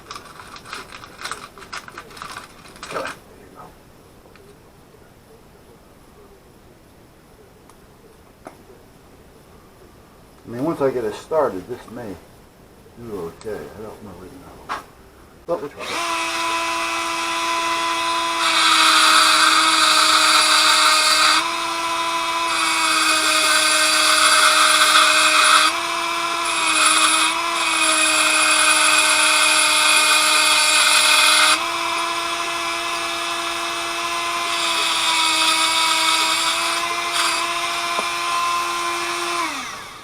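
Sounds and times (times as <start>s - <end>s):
rotary tool motor whine: 15.8s - 40.0s.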